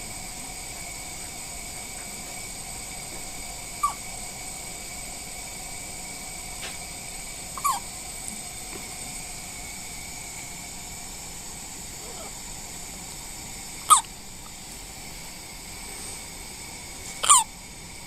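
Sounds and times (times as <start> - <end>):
high-pitched electronic hum: 0.0 - 18.0
baby hiccups: 17.2 - 17.4.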